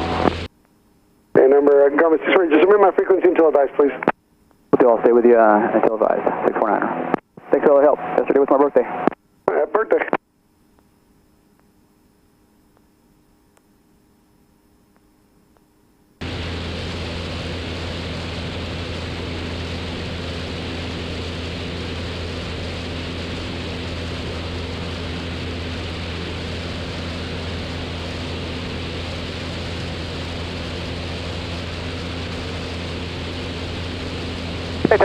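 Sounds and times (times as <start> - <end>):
small plane engine droning: 0.0 - 0.5, 16.2 - 35.0.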